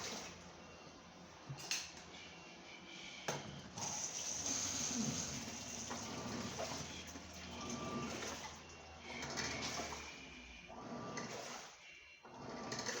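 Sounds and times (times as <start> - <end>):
water churning in washing machine: 0.0 - 0.8, 3.5 - 13.0.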